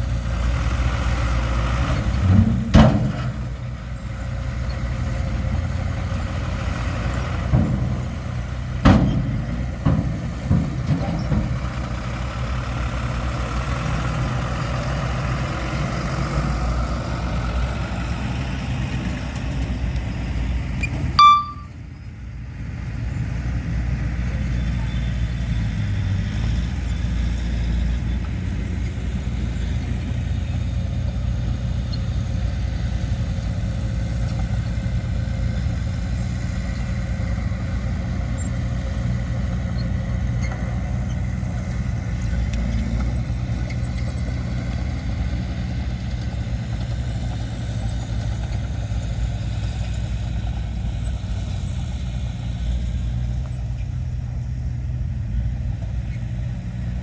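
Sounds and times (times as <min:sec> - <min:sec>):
diesel machinery rumbling: 0:00.0 - 0:57.0
loud high-pitched tone: 0:21.2 - 0:21.8.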